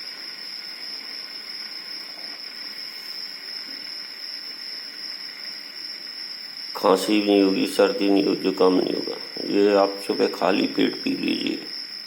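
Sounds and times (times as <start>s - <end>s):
steady hiss: 0.0s - 12.0s
high-pitched whine: 6.8s - 11.8s.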